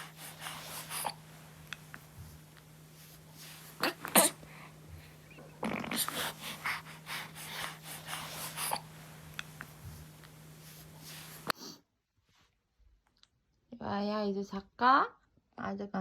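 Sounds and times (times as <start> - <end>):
baby snuffly breathing and grunts: 0.0 - 1.3, 3.4 - 10.1
steady low hum: 0.0 - 11.5.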